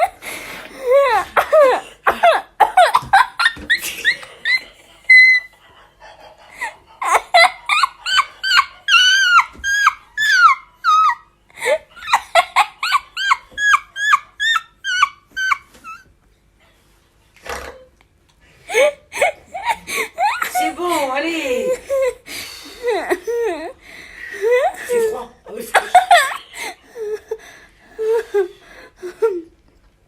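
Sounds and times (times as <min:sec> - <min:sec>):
person squealing laughter: 0:06.6 - 0:16.1.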